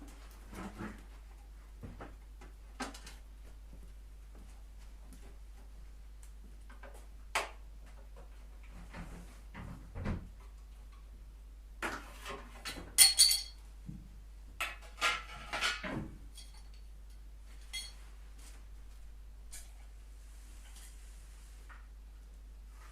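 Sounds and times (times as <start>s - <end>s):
metal tools clinking and clanking: 13.0s - 13.6s, 16.3s - 16.8s, 17.6s - 18.0s.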